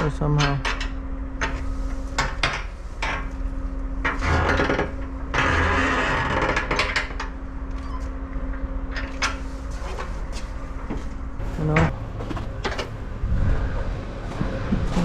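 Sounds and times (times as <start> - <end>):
portable generator humming: 11.3 - 15.0
metal rattling scrapes: 11.4 - 14.4.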